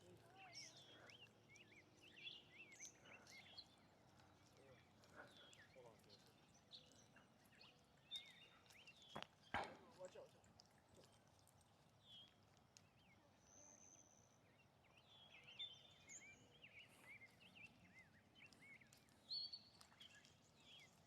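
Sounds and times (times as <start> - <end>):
faint bird chirps: 12.0 - 21.0.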